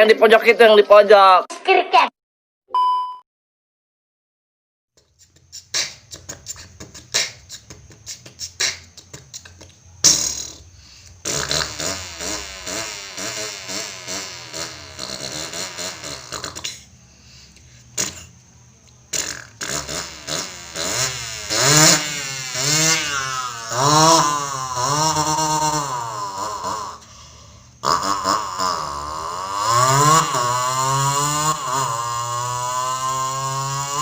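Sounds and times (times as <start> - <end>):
child imitating motorbike engine: 5.2 - 17.0, 17.9 - 18.4, 19.1 - 34.0.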